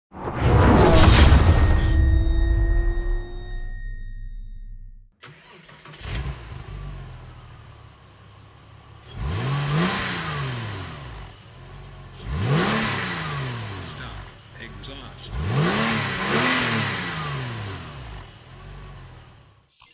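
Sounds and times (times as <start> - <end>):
engine starter cranking: 5.2 - 6.8
car engine idling: 6.0 - 19.6.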